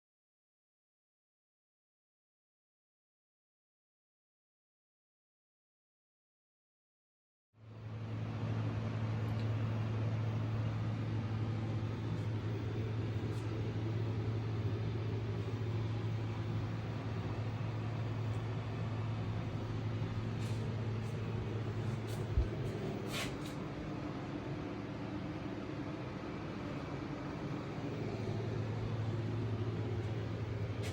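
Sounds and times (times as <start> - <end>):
low mechanical hum: 7.6 - 30.9.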